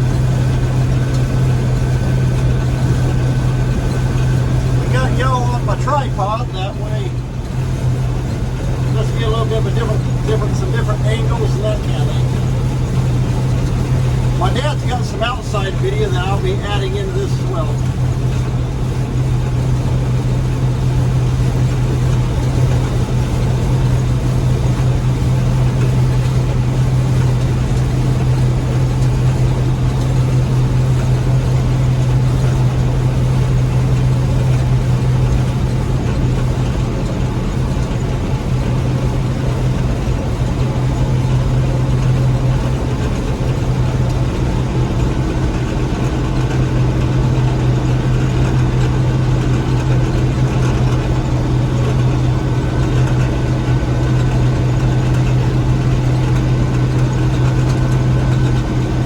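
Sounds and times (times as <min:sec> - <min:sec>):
combine engine drone: 0:00.0 - 0:59.0
threshing machinery noise: 0:00.0 - 0:59.0.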